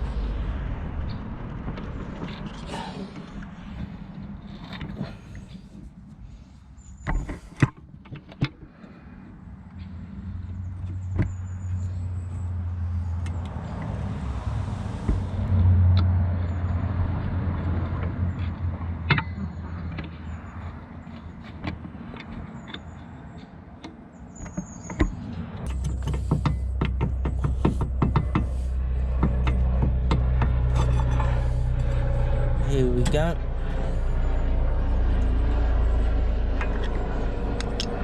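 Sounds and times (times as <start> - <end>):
steady low hum: 0.0 - 7.7, 25.2 - 38.0
metal tool clinks and scrapes: 30.6 - 32.4.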